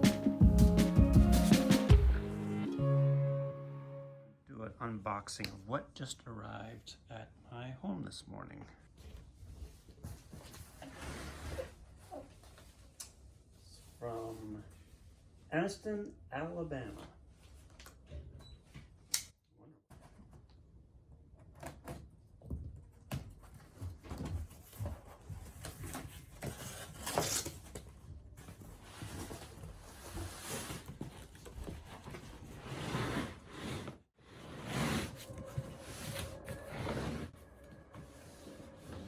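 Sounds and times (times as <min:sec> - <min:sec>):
cardboard box scraping and rustling: 0:28.4 - 0:37.4.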